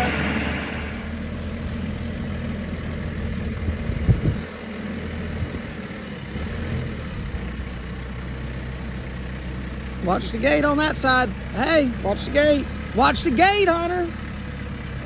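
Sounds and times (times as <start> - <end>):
vehicle engine running: 0.0 - 15.0.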